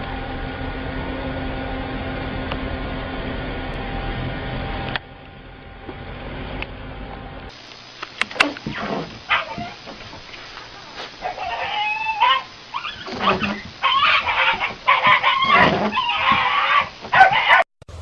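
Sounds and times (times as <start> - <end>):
loud pitched animal calls: 8.3 - 17.6.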